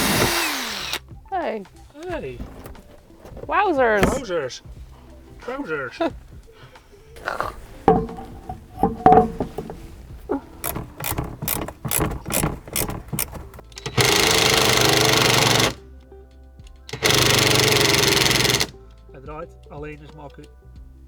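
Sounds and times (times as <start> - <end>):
power tool on bolt: 0.0 - 1.1, 2.0 - 4.2, 7.8 - 15.8, 16.9 - 18.7
ratchet clicking on bolt: 0.0 - 1.1, 7.8 - 15.8, 16.9 - 18.7.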